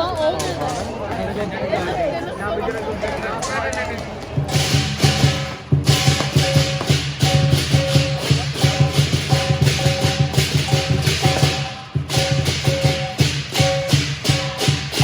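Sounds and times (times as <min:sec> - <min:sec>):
drum beaten fast: 0:04.4 - 0:15.0
clashing cymbals: 0:04.5 - 0:15.0.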